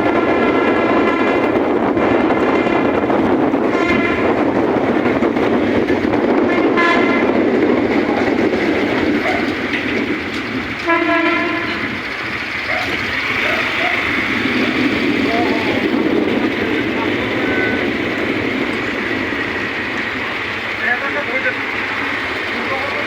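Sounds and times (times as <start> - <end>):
train rail rumble: 0.0 - 23.0
train horn blasts: 3.7 - 4.5, 6.6 - 7.4, 10.8 - 12.0.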